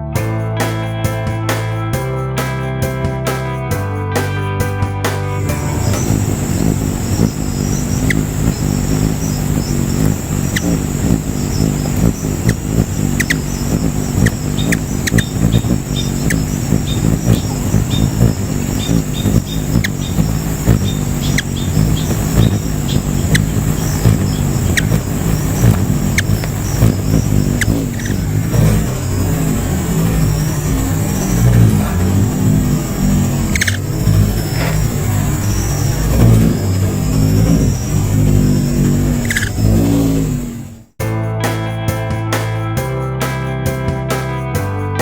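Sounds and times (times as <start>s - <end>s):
hummingbird wings humming: 5.5s - 41.0s
short high bird chirps: 5.6s - 28.7s.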